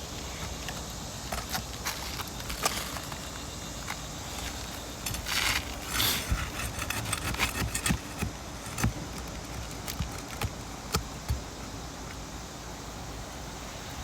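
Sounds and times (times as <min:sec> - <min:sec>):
rasping scrapes on shingles: 0:00.2 - 0:11.2.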